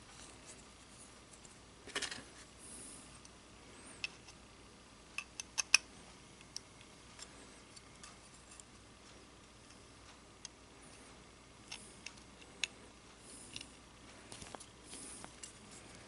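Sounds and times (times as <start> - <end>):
small steel parts clicking: 5.2 - 5.8.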